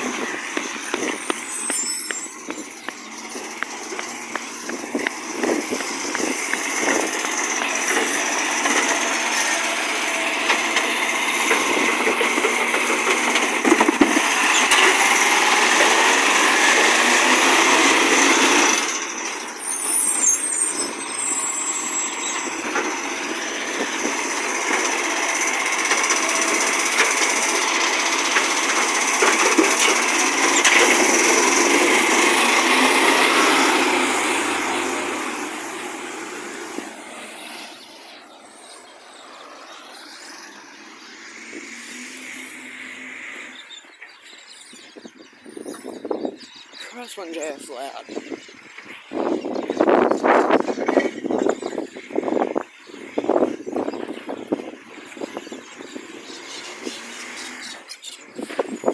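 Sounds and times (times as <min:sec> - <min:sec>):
truck engine with leaking exhaust: 0:00.0 - 0:58.9
brief high squeal: 0:01.1 - 0:02.6, 0:19.6 - 0:22.7.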